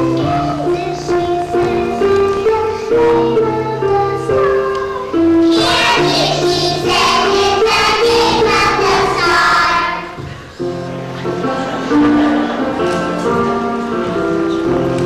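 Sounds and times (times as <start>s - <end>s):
instrumental accompaniment: 0.0s - 15.0s
children singing: 0.3s - 10.2s.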